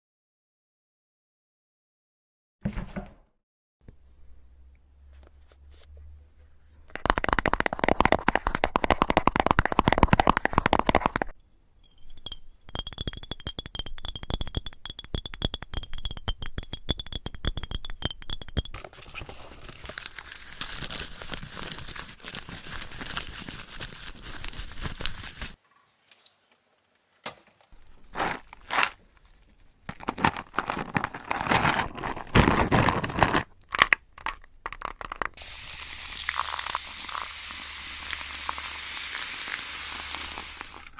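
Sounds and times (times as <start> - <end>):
high ringing tone: 11.8 - 14.2
crunching and crinkling handling: 18.8 - 25.6, 27.8 - 35.4.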